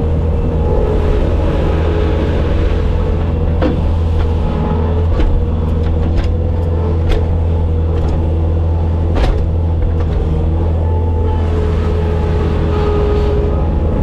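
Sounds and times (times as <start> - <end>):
diesel engine running: 0.0 - 14.0
knocks and clanks: 3.3 - 10.7.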